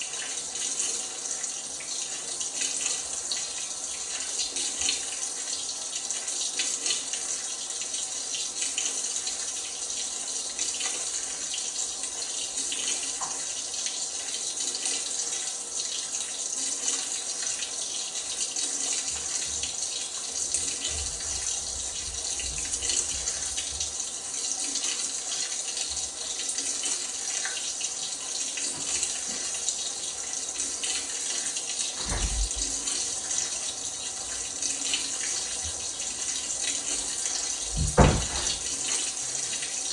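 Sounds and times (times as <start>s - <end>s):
water hissing into washing machine: 0.0s - 39.9s
low thump: 32.0s - 32.8s, 37.7s - 38.7s.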